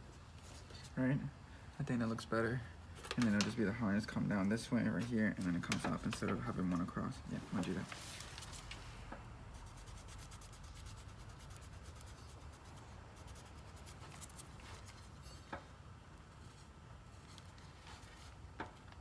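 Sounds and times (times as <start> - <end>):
pen scratching on paper: 9.6 - 14.6.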